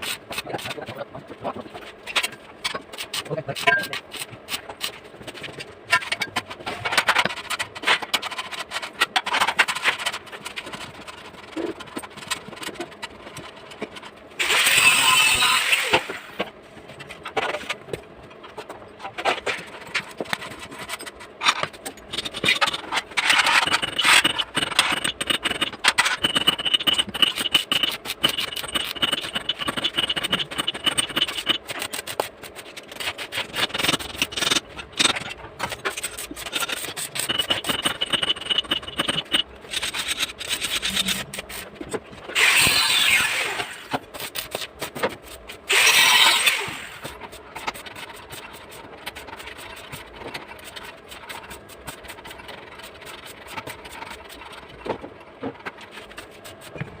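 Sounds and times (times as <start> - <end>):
high machine whine: 21.4 - 44.0.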